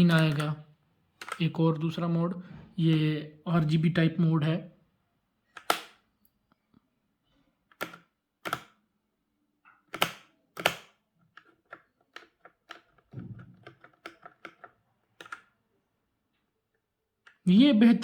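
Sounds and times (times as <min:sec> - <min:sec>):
mechanical keyboard keys clacking: 0:07.8 - 0:08.7, 0:09.9 - 0:11.0.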